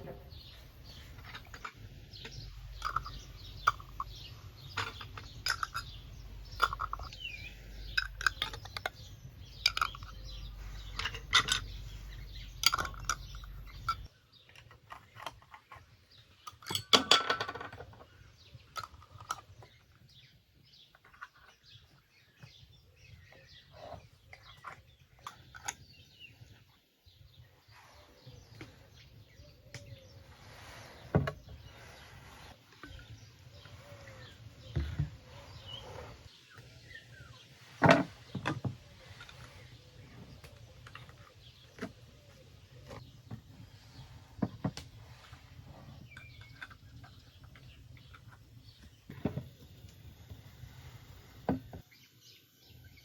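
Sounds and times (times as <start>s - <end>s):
clattering rattle: 0.0s - 7.2s, 9.6s - 14.1s, 16.4s - 18.1s
kitchenware clinking: 1.2s - 7.2s, 9.6s - 14.1s, 16.4s - 18.0s.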